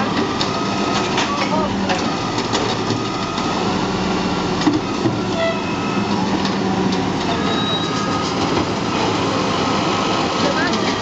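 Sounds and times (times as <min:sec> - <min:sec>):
garbage truck engine and hydraulics: 0:00.0 - 0:11.0.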